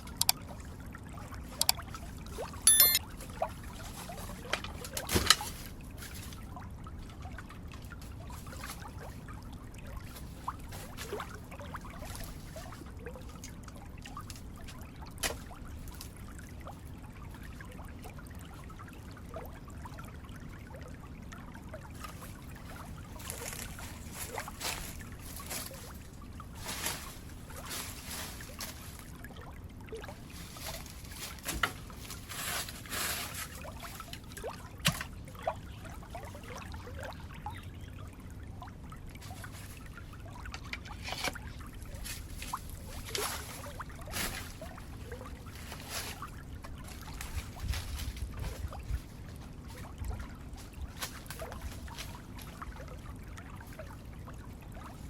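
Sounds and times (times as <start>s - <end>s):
water trickling: 5.6s - 55.0s.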